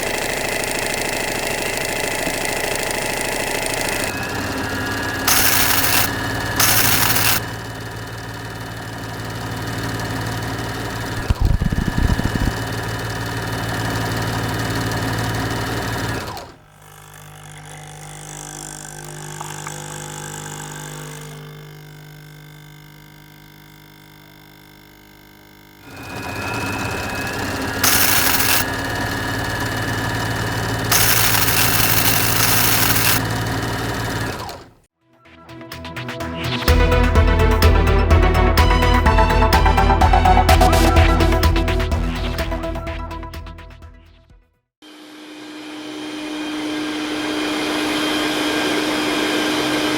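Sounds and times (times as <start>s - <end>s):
mechanical hum: 2.2s - 9.6s, 10.6s - 13.0s, 16.2s - 34.8s.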